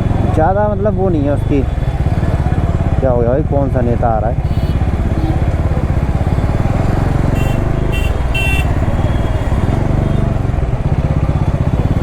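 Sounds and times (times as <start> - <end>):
motorcycle engine running: 0.0 - 12.0
vehicle horns tooting: 4.4 - 10.5.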